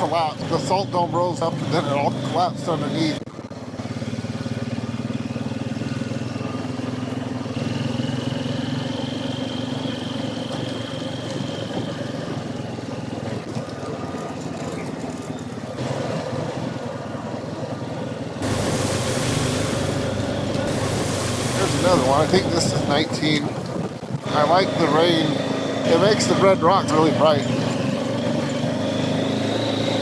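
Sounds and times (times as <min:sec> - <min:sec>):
quad bike engine running: 0:00.0 - 0:30.0
loud rushing noise: 0:18.4 - 0:23.6
thin high whine: 0:18.4 - 0:23.6.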